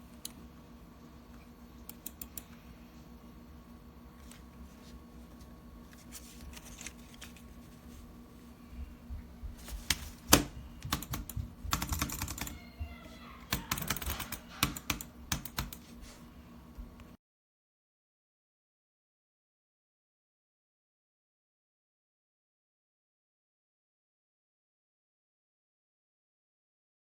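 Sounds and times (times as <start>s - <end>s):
computer buttons clicking: 1.9s - 2.5s, 13.5s - 15.8s.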